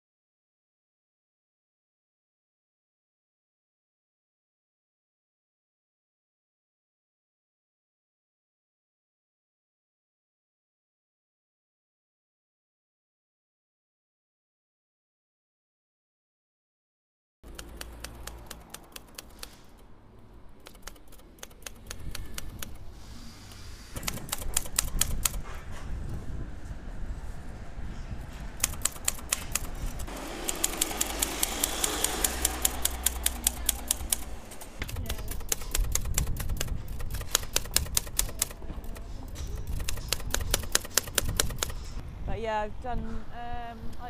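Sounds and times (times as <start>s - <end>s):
typewriter keys clicking: 17.4s - 19.8s, 20.6s - 22.9s, 24.0s - 25.4s, 28.6s - 41.8s.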